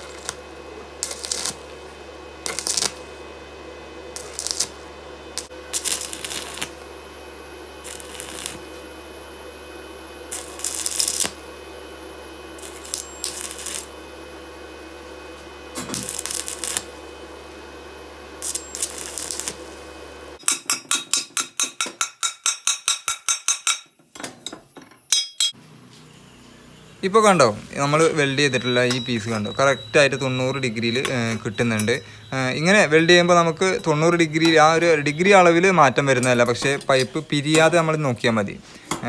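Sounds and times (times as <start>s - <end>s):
welding arc crackling: 0.0s - 20.4s, 27.0s - 39.0s
welder hum: 0.0s - 21.8s, 25.1s - 39.0s.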